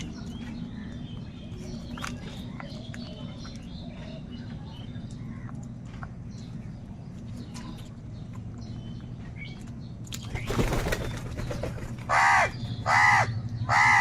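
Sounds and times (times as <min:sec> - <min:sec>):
small birds chirping: 0:00.0 - 0:14.0
crow cawing harshly: 0:12.1 - 0:14.0.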